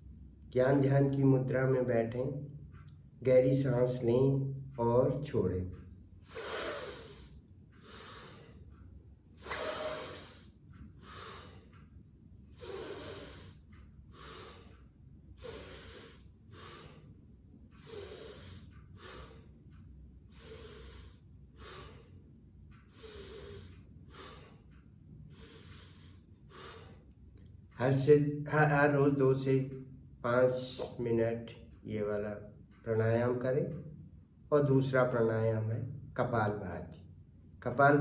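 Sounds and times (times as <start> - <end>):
man breathing forcefully through nose: 6.2 - 27.8.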